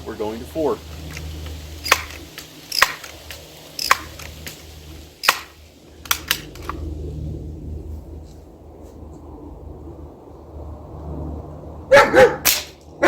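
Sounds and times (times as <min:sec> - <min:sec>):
air gun pump arm clacks: 0:01.1 - 0:04.6
light gun clicks: 0:05.2 - 0:06.8.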